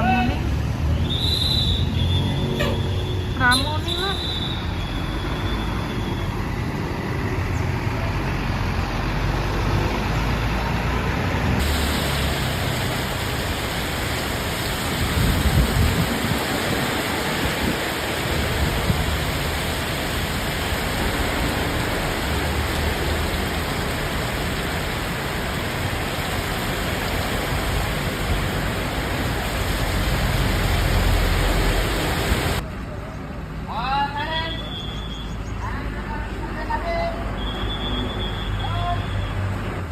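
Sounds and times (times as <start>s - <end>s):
traffic engine rumble: 0.0s - 39.9s
rain on wet road: 11.6s - 32.6s.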